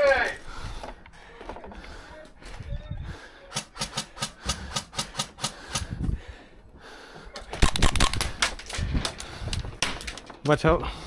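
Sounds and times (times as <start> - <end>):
airsoft gunfire pops: 7.6 - 8.6.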